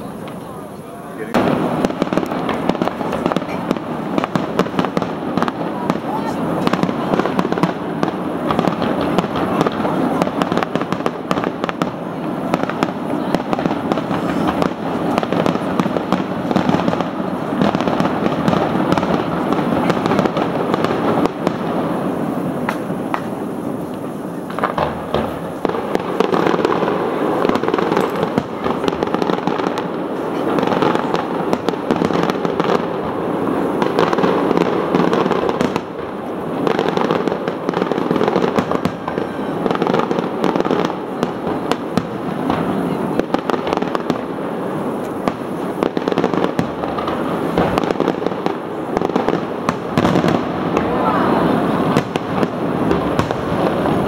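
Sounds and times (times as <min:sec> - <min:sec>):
fireworks bangs and crackling: 0:00.0 - 0:54.0.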